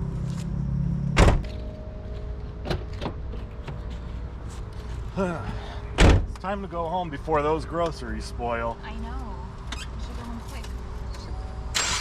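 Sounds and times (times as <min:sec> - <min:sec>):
car door slamming: 0:01.2 - 0:01.5, 0:06.0 - 0:06.4.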